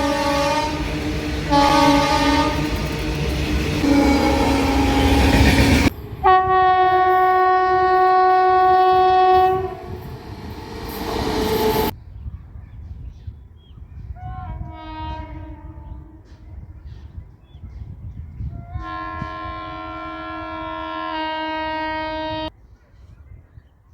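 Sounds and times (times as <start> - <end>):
locomotive horn blasts: 0.0 - 2.9, 3.6 - 11.9, 14.3 - 16.2, 18.7 - 22.5
passing train rumble: 0.0 - 12.0.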